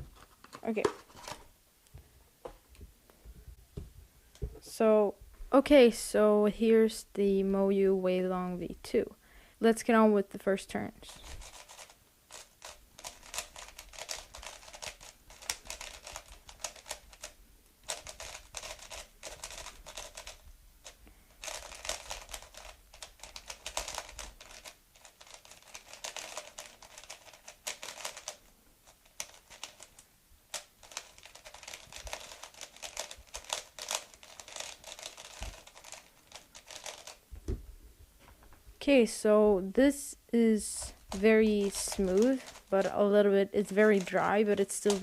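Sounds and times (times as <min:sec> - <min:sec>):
plastic puzzle cube clicking: 0:11.3 - 0:37.2, 0:41.1 - 0:42.7, 0:44.8 - 0:45.0.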